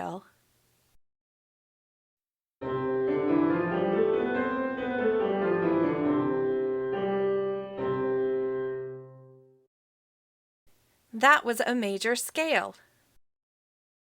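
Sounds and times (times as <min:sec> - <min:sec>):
sustained piano chords: 0:02.6 - 0:09.6
piano playing a scale: 0:02.6 - 0:09.7.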